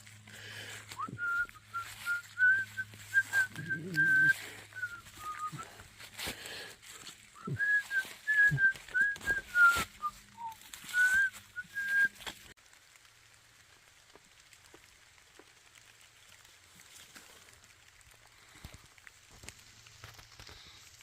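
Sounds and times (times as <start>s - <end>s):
footsteps: 0.0s - 12.6s
faint rain: 0.0s - 21.0s
person whistling a tune: 0.9s - 5.8s, 7.4s - 12.2s.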